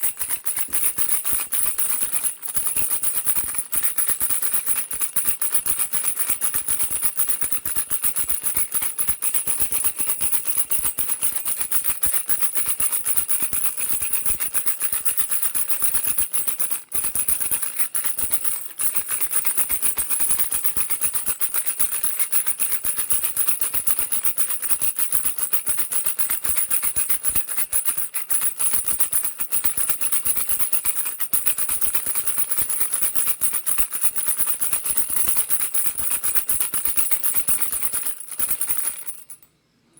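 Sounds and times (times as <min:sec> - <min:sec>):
baby rattle shaken: 0:00.0 - 0:39.5.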